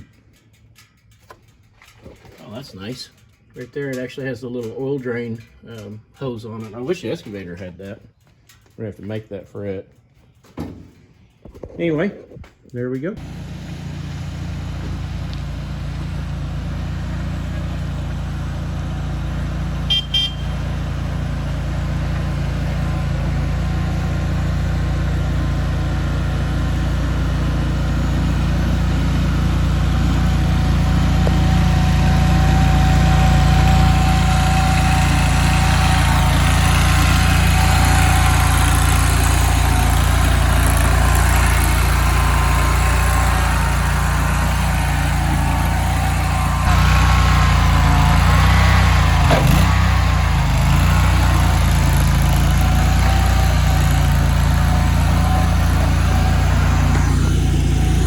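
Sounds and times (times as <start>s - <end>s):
engine running steadily: 13.2s - 58.0s.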